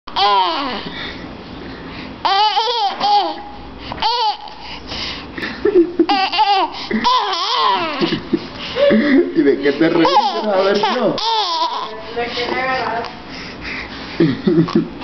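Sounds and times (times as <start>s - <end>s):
baby laughing: 0.1s - 0.9s, 2.2s - 4.6s, 5.9s - 12.0s.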